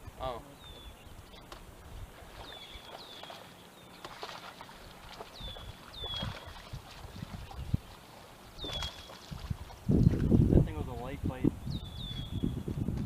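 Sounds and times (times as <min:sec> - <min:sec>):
bird whistling calls: 0:05.4 - 0:06.6, 0:08.6 - 0:09.2, 0:11.7 - 0:12.6.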